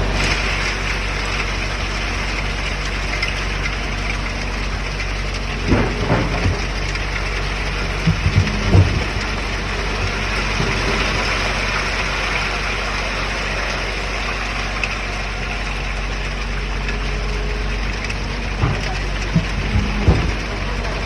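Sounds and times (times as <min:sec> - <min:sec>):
heavy diesel engines running: 0:00.0 - 0:21.0
short knocks: 0:05.6 - 0:11.2, 0:18.5 - 0:21.0.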